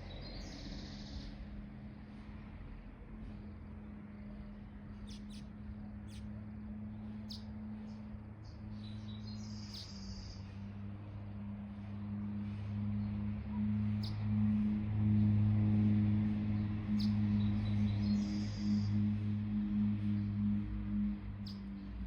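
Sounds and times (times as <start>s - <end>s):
steady low drone: 0.0s - 22.0s
birds chirping: 3.2s - 14.6s, 16.3s - 19.3s, 21.2s - 22.0s.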